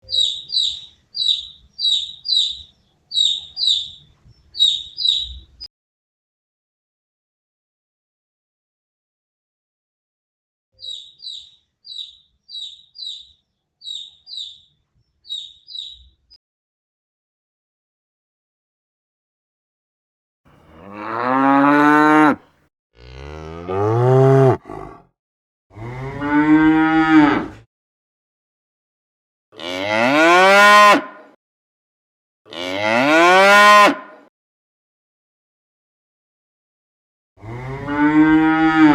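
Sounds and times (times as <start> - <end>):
bird chirping: 0.0 - 5.7, 10.8 - 16.4
cow mooing: 20.6 - 22.4, 23.0 - 25.1, 25.7 - 27.6, 29.6 - 31.1, 32.5 - 34.1, 37.4 - 38.9.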